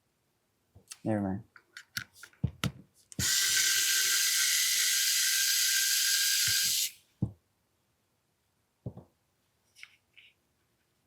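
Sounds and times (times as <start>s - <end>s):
gas spraying from nozzle: 3.2s - 7.0s.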